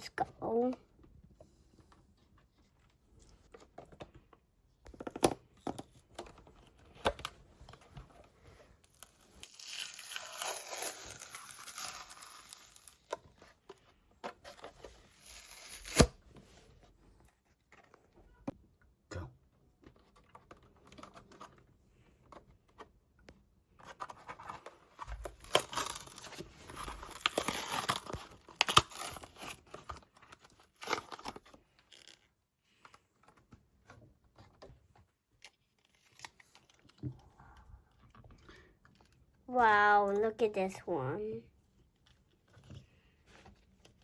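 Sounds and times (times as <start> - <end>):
cardboard and plastic tearing: 8.9 - 13.3, 14.3 - 16.2, 23.8 - 32.3, 35.5 - 37.0.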